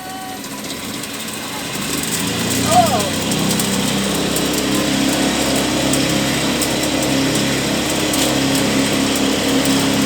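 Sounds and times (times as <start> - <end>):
small engine running: 0.0 - 10.0.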